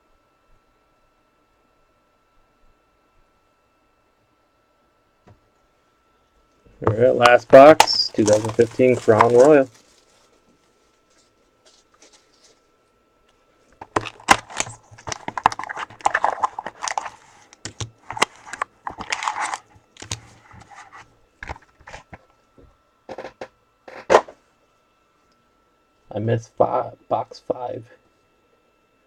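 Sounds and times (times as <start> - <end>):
cardboard and wrappers rustling: 6.9 - 12.7, 13.8 - 22.3.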